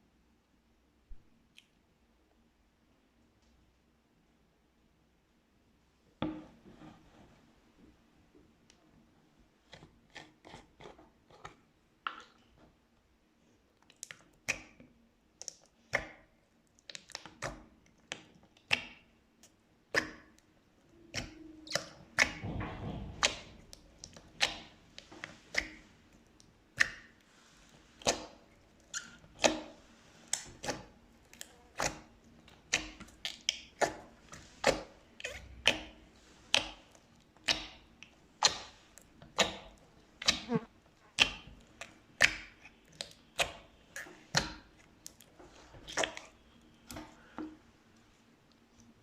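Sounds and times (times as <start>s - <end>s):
slime squishing: 13.7s - 49.0s.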